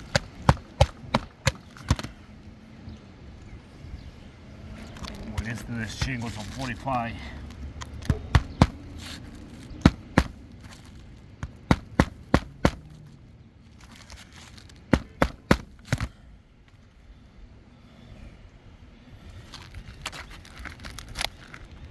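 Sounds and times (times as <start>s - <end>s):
hammer striking roofing nails: 0.0s - 2.1s, 8.0s - 8.8s, 9.8s - 10.4s, 11.4s - 12.9s, 14.9s - 16.1s.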